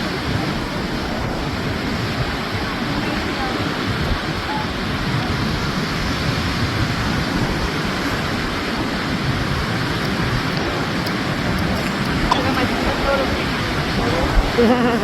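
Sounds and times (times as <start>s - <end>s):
strong wind: 0.0s - 15.0s
surf rushing: 0.0s - 15.0s
wind buffeting microphone: 0.0s - 15.0s.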